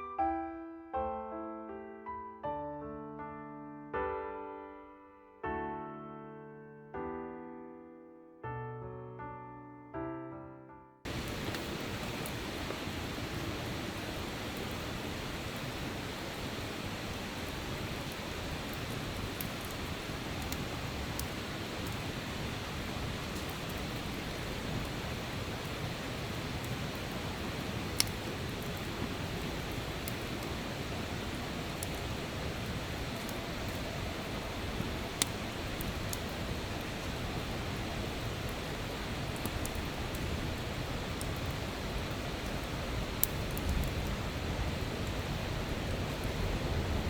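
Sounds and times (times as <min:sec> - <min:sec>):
faint fire crackles: 0:11.0 - 0:47.0
campfire hissing: 0:11.1 - 0:47.0
steady rushing outdoor noise: 0:11.1 - 0:47.0
faint ticks: 0:18.1 - 0:20.6, 0:21.2 - 0:22.0, 0:28.0 - 0:28.9, 0:35.2 - 0:36.4, 0:43.2 - 0:44.1.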